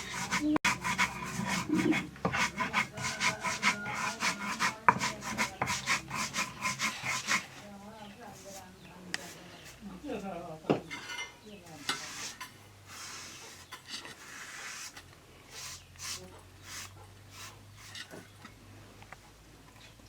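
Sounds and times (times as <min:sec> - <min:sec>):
stone pestle grinding on stone: 0:00.0 - 0:07.5, 0:11.8 - 0:18.3.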